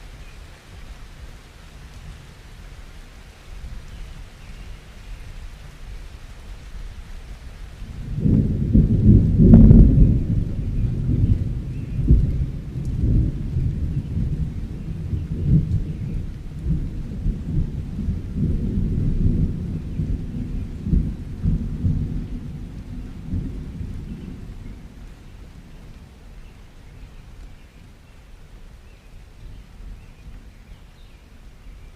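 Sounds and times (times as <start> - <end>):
rolling thunder: 7.8 - 26.2.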